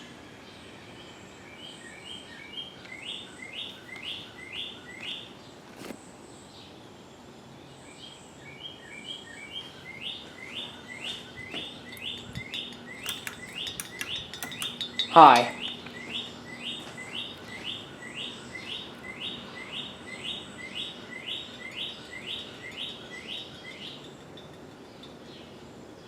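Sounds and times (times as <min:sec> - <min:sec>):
ceiling fan hum: 0:00.0 - 0:26.0
songbird whistling: 0:08.5 - 0:24.1.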